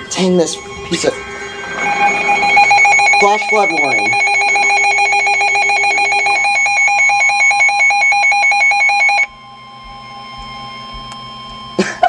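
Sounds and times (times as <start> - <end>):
two-pitch pulsing alarm beep: 0.0 - 11.7
faint steady alert tone: 0.2 - 7.0.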